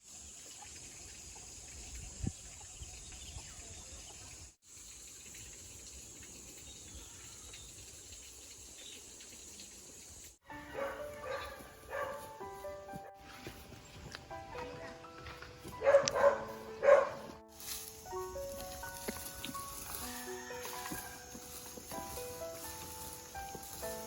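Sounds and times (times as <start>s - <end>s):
background music with held notes: 10.4s - 24.0s
high-pitched hiss: 17.4s - 24.0s.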